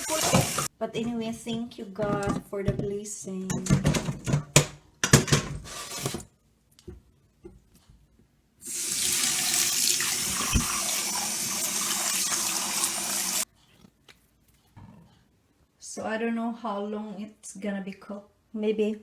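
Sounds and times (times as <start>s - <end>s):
tap running into sink: 10.2s - 11.0s.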